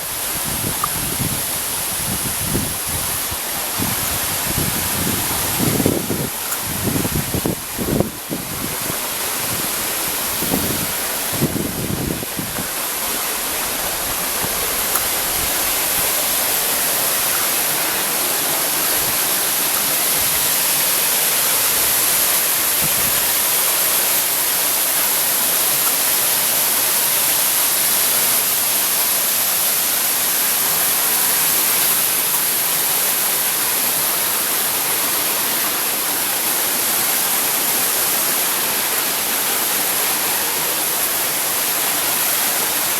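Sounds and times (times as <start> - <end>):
waterfall rushing: 0.0 - 42.9
wind bumps on microphone: 0.2 - 12.8.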